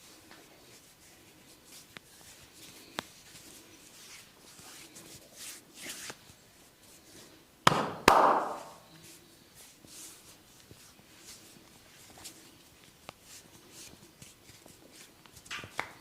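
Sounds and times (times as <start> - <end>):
scratching and rustling in hair: 0.0 - 7.4, 8.8 - 16.0
sharp hand smacks: 7.7 - 8.8, 15.5 - 16.0.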